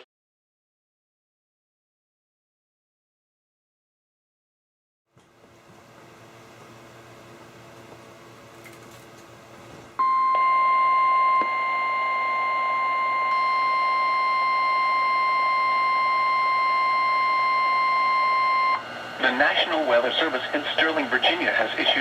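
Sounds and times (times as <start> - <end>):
weather radio alarm tone: 10.0 - 22.0.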